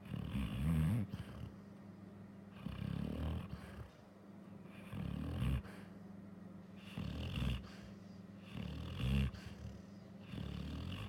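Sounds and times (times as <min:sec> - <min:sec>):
dog snoring: 0:00.0 - 0:01.6, 0:02.5 - 0:04.0, 0:04.7 - 0:05.9, 0:06.8 - 0:11.0.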